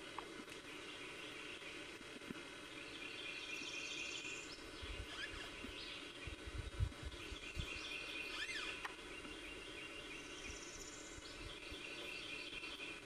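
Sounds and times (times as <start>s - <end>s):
songbirds singing: 0.0s - 13.0s
bird whistle rising and falling: 7.5s - 8.8s.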